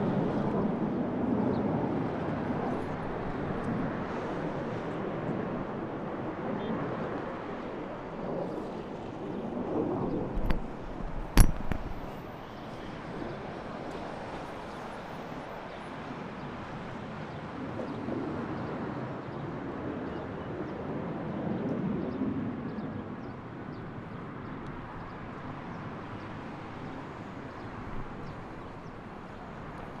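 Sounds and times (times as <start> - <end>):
outdoor background noise: 0.0 - 30.0
sharp knock: 10.4 - 12.2.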